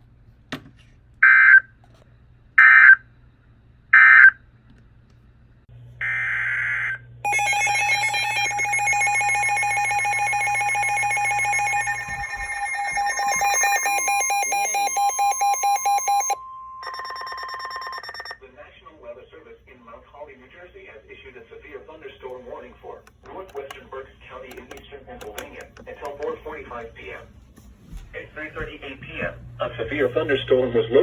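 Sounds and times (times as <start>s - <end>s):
steady alarm tone: 6.0s - 18.4s
digital data tone bursts: 7.3s - 18.4s
electronic alarm beeping rapidly: 7.3s - 18.4s.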